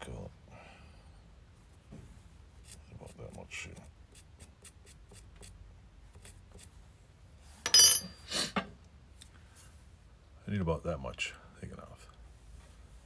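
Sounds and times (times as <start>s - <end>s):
ringing metal clink: 7.7s - 8.2s.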